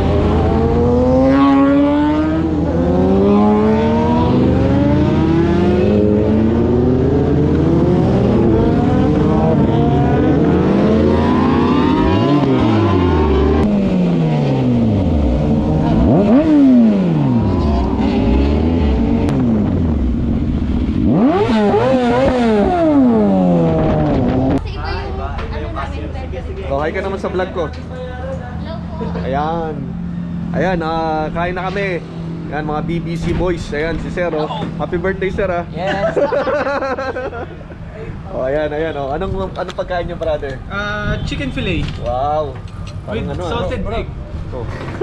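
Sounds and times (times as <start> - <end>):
motorcycle engines revving: 0.0 - 45.0.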